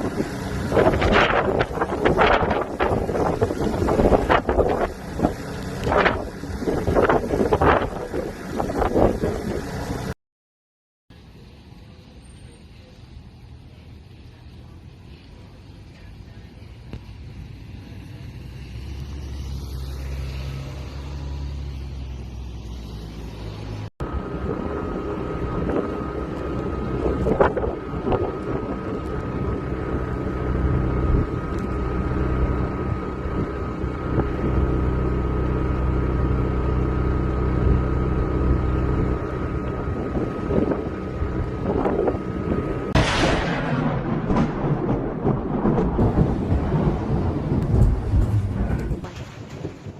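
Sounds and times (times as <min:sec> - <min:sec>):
engine running: 0:00.0 - 0:10.2, 0:11.2 - 0:49.9
high whine: 0:22.0 - 0:49.5.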